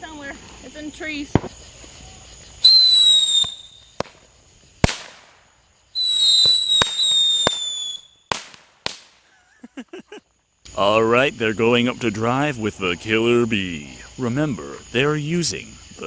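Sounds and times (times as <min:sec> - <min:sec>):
firework bangs: 0:01.2 - 0:01.8, 0:02.5 - 0:09.3
firework whistles: 0:01.2 - 0:09.3.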